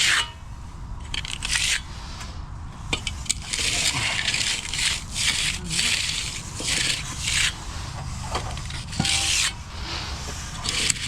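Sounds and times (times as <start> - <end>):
trowel scraping wet concrete: 3.0 - 11.0.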